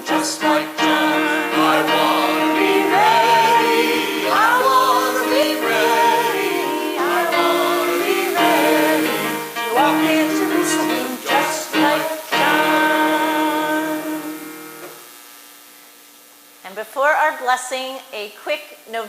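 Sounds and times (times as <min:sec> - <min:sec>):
man and woman singing a hymn: 0:00.0 - 0:14.8.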